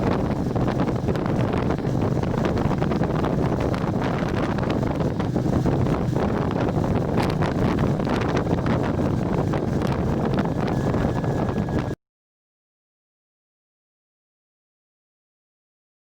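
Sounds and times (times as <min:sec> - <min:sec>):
motorcycle engine running: 0:00.0 - 0:12.0
wind buffeting microphone: 0:00.0 - 0:12.0.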